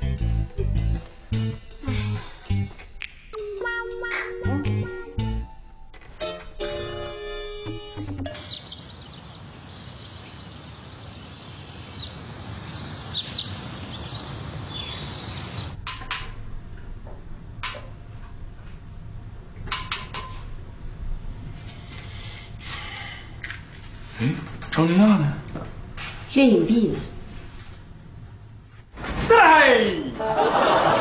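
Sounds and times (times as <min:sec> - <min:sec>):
background noise: 0:08.3 - 0:31.0
faint bird chirps: 0:08.4 - 0:15.8.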